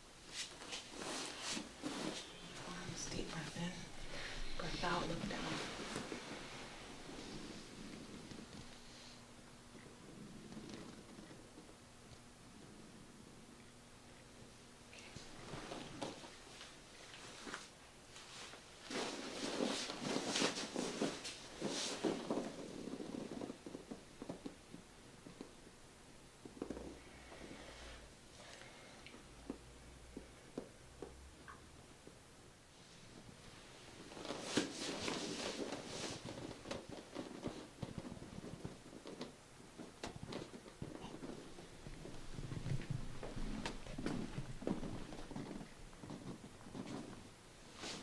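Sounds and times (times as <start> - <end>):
clothing rustling: 0.3 - 8.9, 15.0 - 24.5, 32.8 - 48.0.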